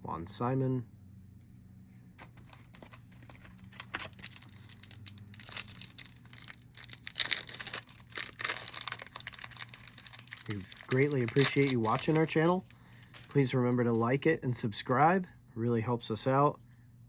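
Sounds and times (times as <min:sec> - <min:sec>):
wrapper tearing and crinkling: 0:02.3 - 0:14.0.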